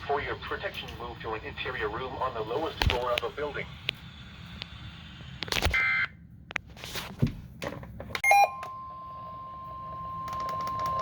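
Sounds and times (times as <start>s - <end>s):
steady alarm tone: 8.2s - 10.3s.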